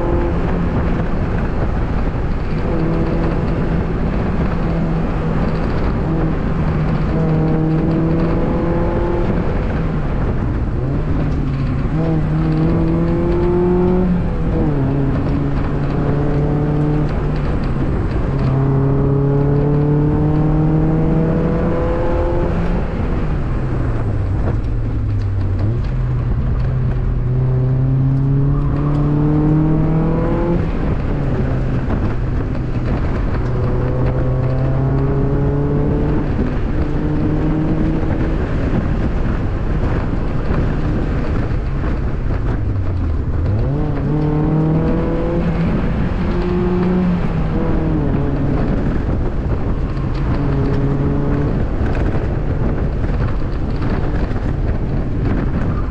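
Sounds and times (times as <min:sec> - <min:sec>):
car engine accelerating: 0:00.0 - 0:55.9.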